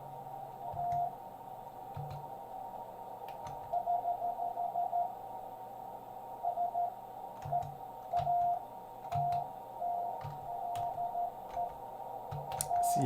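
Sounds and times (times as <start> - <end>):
radio band hiss: 11.8 - 13.0.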